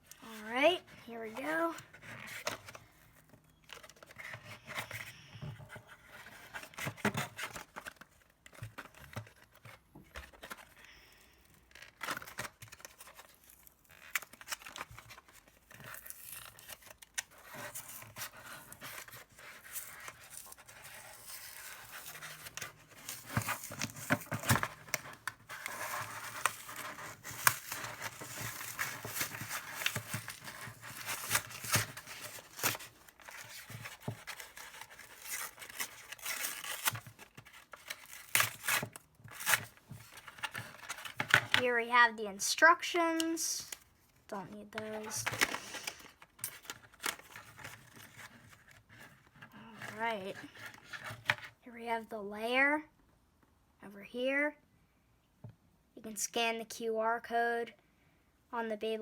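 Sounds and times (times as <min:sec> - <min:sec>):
cardboard and plastic tearing: 0:05.9 - 0:10.8, 0:11.5 - 0:41.7, 0:44.8 - 0:51.6.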